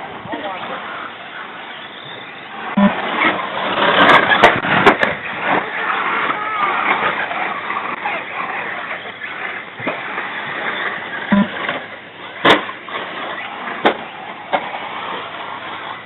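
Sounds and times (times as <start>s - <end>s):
remote control cars whirring: 0.0s - 16.0s.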